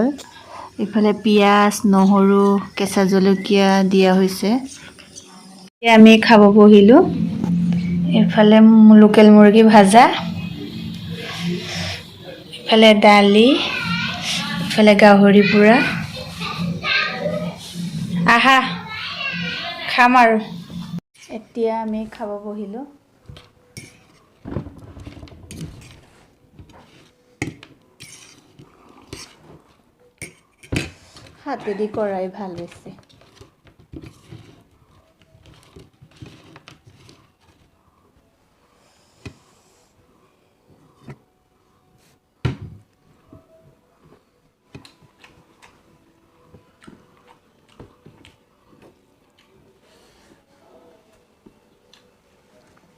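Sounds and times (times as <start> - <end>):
dishes and utensils clinking: 23.7 - 24.3, 25.4 - 32.1.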